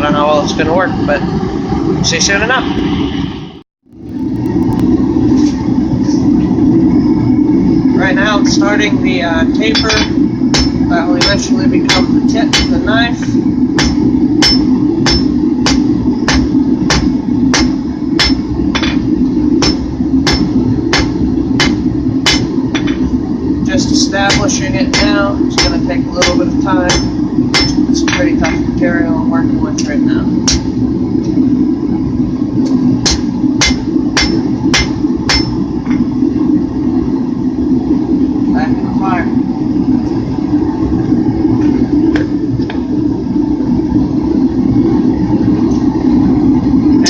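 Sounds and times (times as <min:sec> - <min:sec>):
low rumble: 0:00.0 - 0:47.0
hammer striking steel on anvil: 0:09.7 - 0:12.8, 0:13.8 - 0:19.0, 0:19.6 - 0:23.0, 0:24.3 - 0:28.7, 0:30.4 - 0:30.7, 0:33.0 - 0:35.6.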